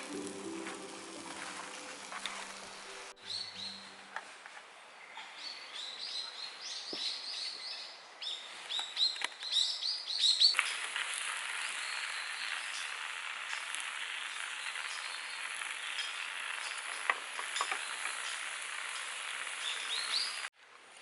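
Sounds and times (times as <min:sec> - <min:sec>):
steady hiss: 0:00.0 - 0:04.6, 0:10.5 - 0:20.5
small birds chirping: 0:11.5 - 0:20.5.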